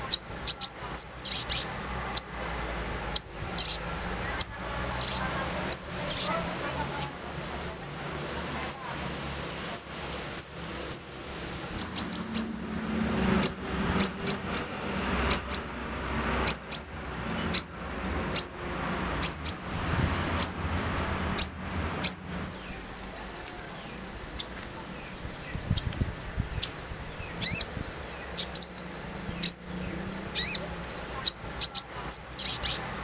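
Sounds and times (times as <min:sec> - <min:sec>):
bird high downward chirps: 0:00.0 - 0:02.4, 0:03.1 - 0:06.4, 0:09.7 - 0:12.6, 0:13.4 - 0:15.8, 0:16.4 - 0:17.8, 0:18.4 - 0:18.6, 0:19.2 - 0:19.7, 0:20.3 - 0:20.7, 0:21.4 - 0:22.8, 0:23.8 - 0:32.8.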